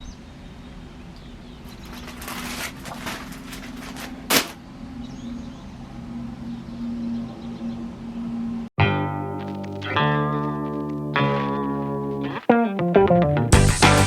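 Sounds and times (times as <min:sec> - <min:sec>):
faint steady hum: 0:00.0 - 0:08.7
packaging rustling and scraping: 0:01.7 - 0:04.6.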